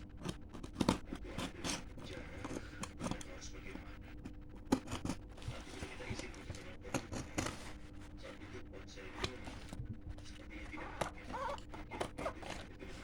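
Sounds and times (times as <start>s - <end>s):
faint steady hum: 0.0s - 13.0s
packaging clicks and taps: 4.2s - 7.8s, 9.1s - 13.0s
scratchy packaging rustles: 4.7s - 13.0s.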